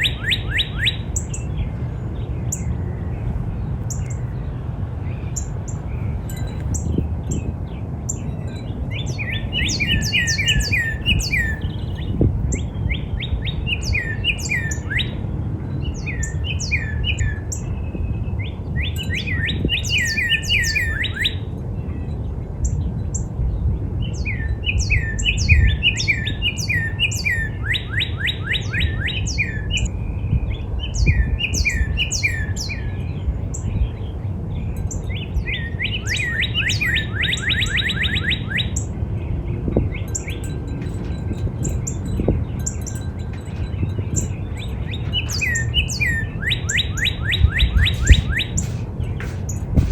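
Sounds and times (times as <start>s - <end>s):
cardinal whistling song: 0.0s - 1.9s, 8.1s - 21.4s, 24.2s - 33.8s, 34.7s - 49.9s
high notes from other birds: 0.0s - 49.9s
steady low rumble: 38.8s - 49.9s.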